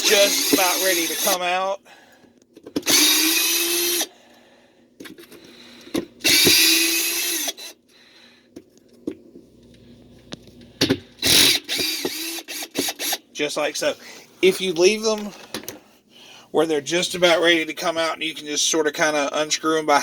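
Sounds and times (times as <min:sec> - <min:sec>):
cordless drill spinning: 0:00.0 - 0:01.5, 0:02.8 - 0:04.1, 0:06.2 - 0:07.8, 0:11.2 - 0:13.2.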